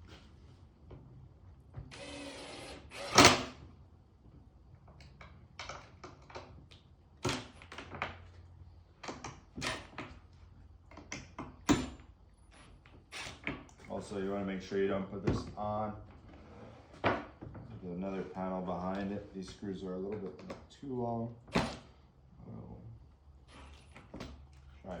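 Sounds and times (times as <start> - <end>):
power drill whirring: 1.9 - 3.6.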